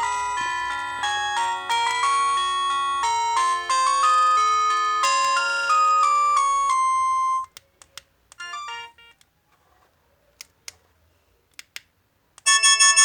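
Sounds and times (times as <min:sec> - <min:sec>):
phone alarm tone melody: 0:00.0 - 0:07.5, 0:08.4 - 0:09.2.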